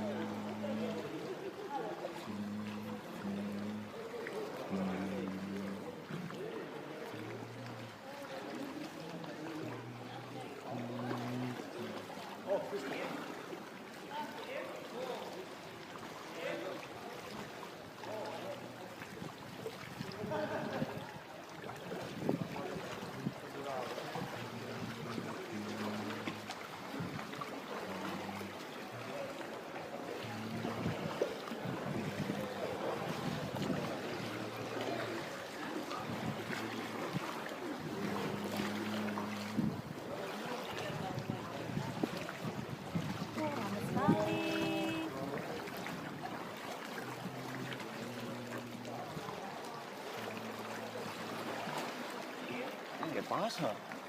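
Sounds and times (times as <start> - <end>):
water lapping around a canoe: 0.0 - 54.0
wind rumbling on microphone: 21.9 - 23.4, 30.3 - 34.6, 35.9 - 38.4, 39.2 - 40.0, 40.8 - 45.2.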